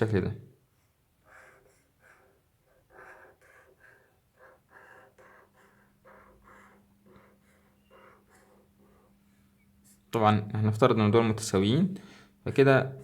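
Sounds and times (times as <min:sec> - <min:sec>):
faint low hum: 0:00.0 - 0:13.0
pen strokes on paper: 0:00.8 - 0:10.1.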